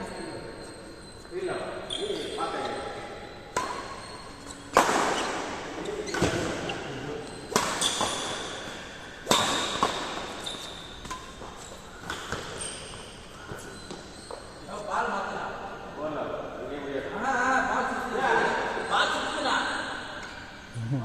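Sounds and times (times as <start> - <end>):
racket hitting shuttlecock: 3.5 - 14.2.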